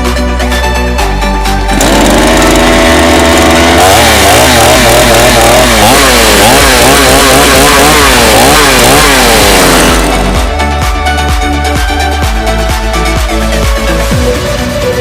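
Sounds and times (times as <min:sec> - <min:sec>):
chainsaw engine revving: 0:01.6 - 0:10.8.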